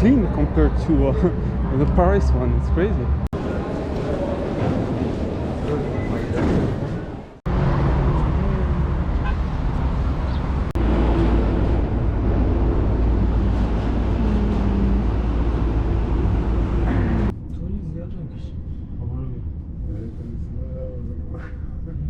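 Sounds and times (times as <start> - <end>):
train rumbling: 0.0 - 22.0
train motor hum: 8.2 - 17.3.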